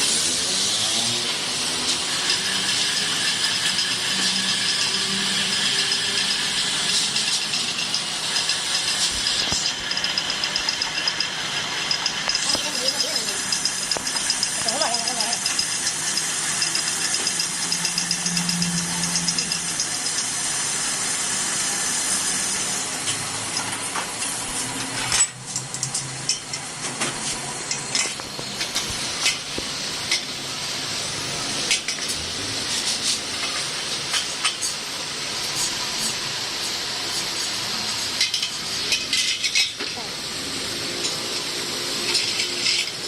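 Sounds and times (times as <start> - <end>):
metallic ticking and clicks: 7.2 - 20.4.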